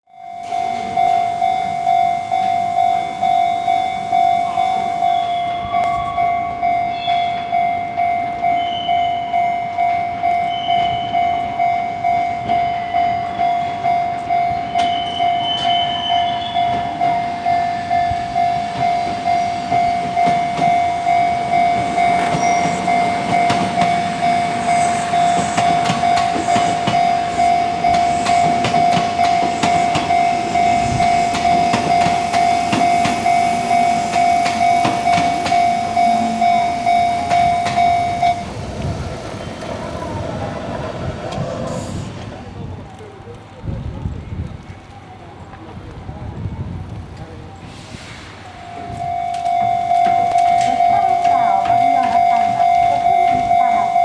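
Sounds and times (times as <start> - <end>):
level-crossing alarm ringing: 0.1 - 42.1, 48.4 - 54.0
electric train passing: 0.1 - 54.0
train wheels clacking on rail joints: 13.2 - 45.0, 48.9 - 54.0.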